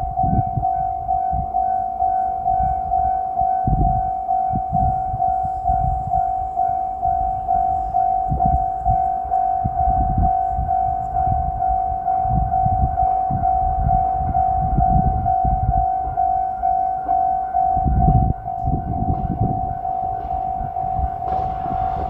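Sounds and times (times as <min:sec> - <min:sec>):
level crossing warning bell: 0:00.0 - 0:22.0
low rumble: 0:12.3 - 0:22.0.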